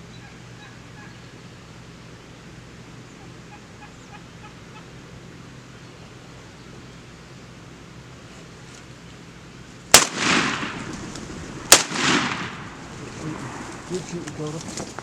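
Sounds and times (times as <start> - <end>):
shotgun shots with echo: 9.9 - 10.9, 11.7 - 12.8.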